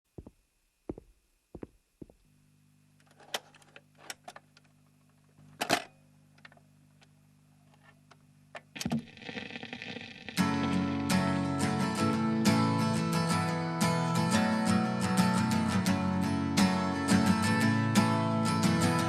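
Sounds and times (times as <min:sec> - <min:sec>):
acoustic guitar strumming: 0:08.8 - 0:19.0.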